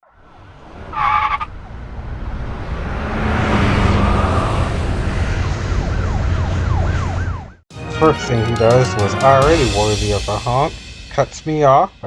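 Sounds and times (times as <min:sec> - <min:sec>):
traffic noise rumble: 0:00.4 - 0:07.2.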